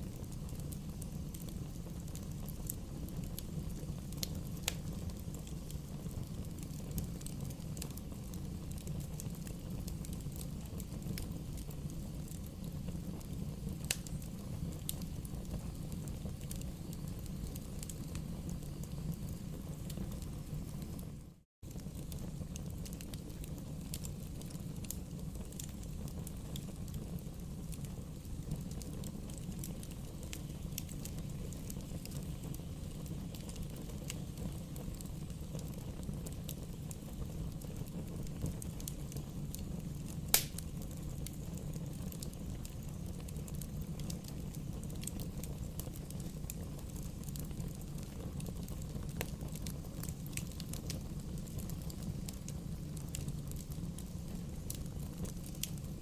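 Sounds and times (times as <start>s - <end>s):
wood fire crackling: 0.0s - 56.0s
fire pop: 13.0s - 19.0s, 27.8s - 42.4s.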